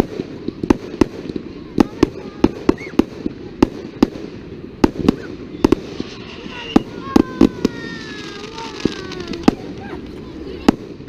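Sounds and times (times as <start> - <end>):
fireworks banging: 0.0 - 11.0.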